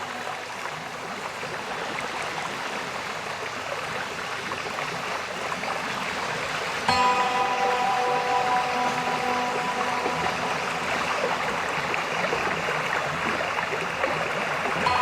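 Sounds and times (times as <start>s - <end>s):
waterfall rushing: 6.3s - 15.0s
sustained music chord: 6.9s - 15.0s.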